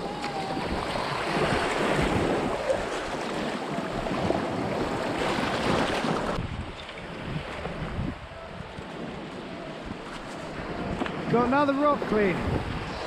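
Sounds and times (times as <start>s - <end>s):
waves washing over rocks: 0.0s - 8.0s
wind buffeting microphone: 0.0s - 13.0s.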